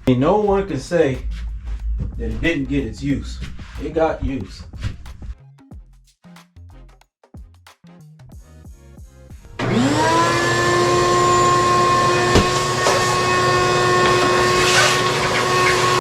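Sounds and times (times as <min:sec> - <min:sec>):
shop vac motor running: 0:09.6 - 0:16.0.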